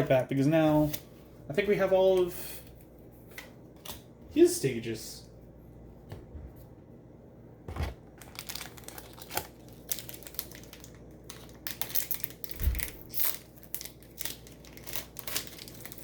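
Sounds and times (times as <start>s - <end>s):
wrapper crinkling and rustling: 8.1s - 16.0s.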